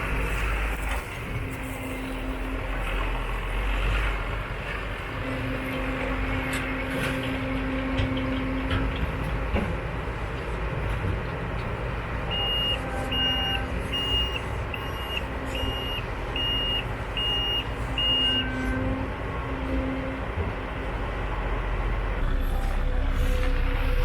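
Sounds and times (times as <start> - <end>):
heavy machinery rumbling: 0.0 - 24.0
reversing alarm beeping: 12.3 - 18.8, 22.2 - 24.0.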